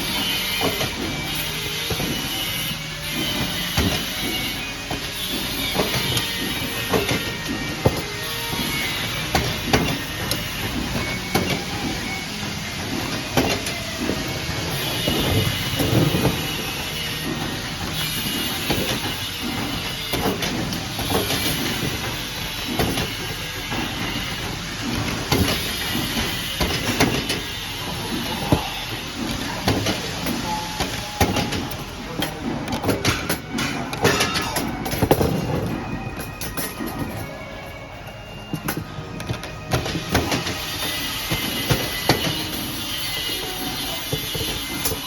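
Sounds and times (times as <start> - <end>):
welding machine hiss and clatter: 0.0 - 37.4, 39.6 - 45.0
sharp metal clanks: 25.3 - 37.3.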